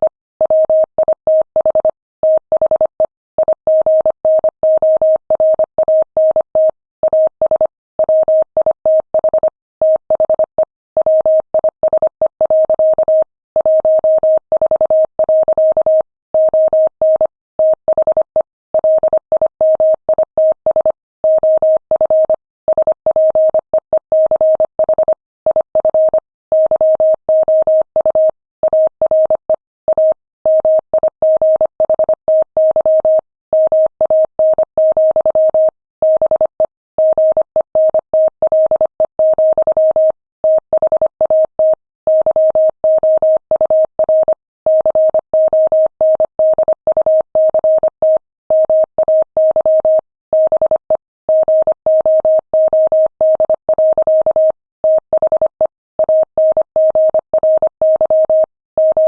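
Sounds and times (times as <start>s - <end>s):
fast morse code beeping: 53.2s - 59.0s.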